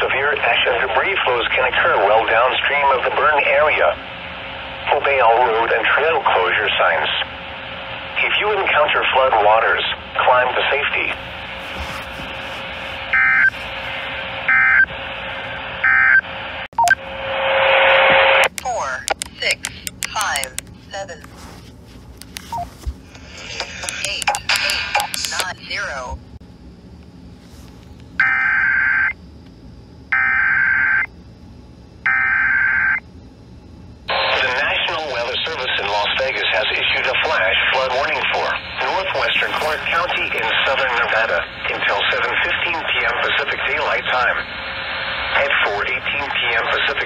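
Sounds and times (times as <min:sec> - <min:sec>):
radio broadcast hiss: 0:00.0 - 0:07.3, 0:07.9 - 0:15.6, 0:17.2 - 0:21.6, 0:22.4 - 0:26.2, 0:34.1 - 0:47.0
buzzing modem-like data tones: 0:12.6 - 0:21.3, 0:22.4 - 0:26.3, 0:28.2 - 0:31.2, 0:32.1 - 0:33.2.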